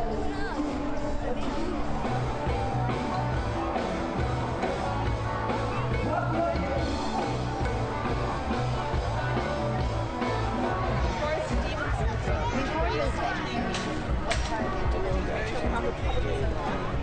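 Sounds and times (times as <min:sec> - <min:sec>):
rock and roll music: 0:00.0 - 0:17.0
steady bass line: 0:00.0 - 0:17.0.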